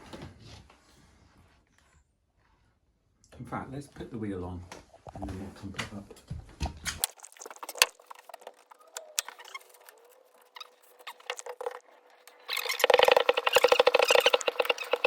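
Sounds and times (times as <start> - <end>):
bike pump strokes: 7.1 - 15.0.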